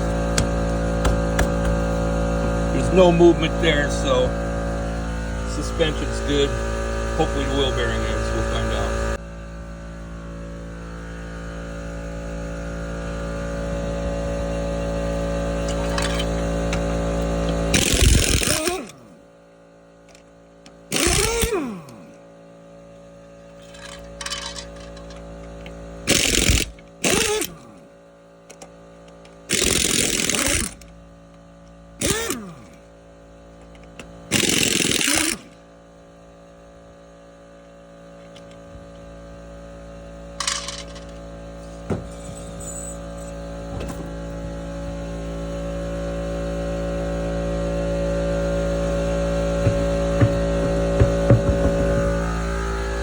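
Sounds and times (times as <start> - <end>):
brake scraping chirps: 40.9 - 44.3
steady hum: 48.0 - 53.0.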